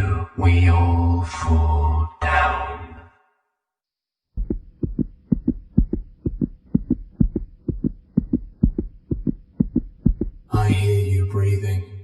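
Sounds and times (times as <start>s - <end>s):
rapid heartbeat thumps: 4.3s - 10.9s.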